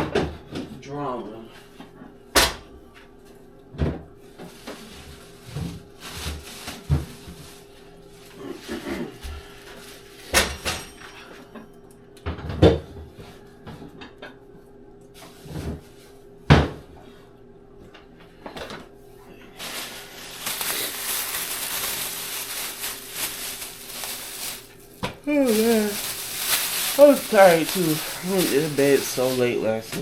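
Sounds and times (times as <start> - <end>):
steady hiss: 19.6 - 30.0.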